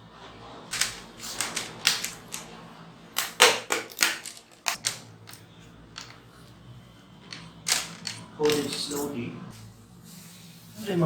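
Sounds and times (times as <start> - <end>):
plastic clips popping loose: 3.2 - 5.0.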